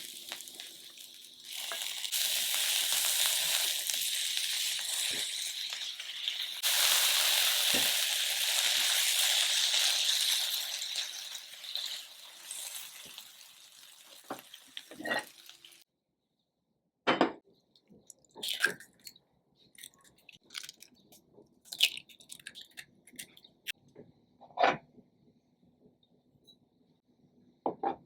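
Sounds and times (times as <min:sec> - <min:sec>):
pan frying hiss: 0:00.0 - 0:15.8
kitchen utensils and dishes clinking: 0:07.6 - 0:15.8.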